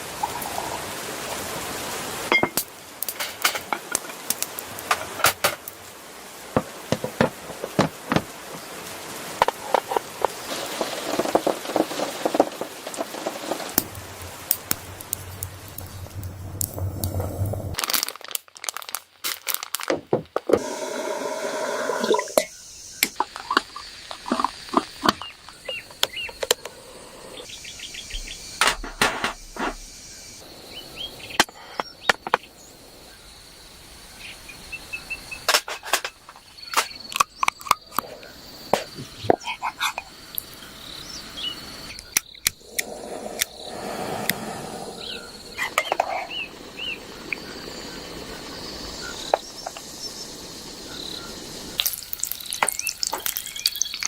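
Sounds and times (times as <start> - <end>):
insects buzzing: 0.0 - 17.8, 20.5 - 54.0
bird chirps: 45.0 - 48.1.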